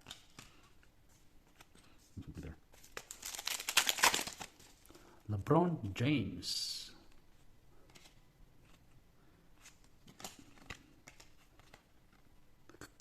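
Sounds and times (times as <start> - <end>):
trading cards being flipped: 9.6 - 12.3.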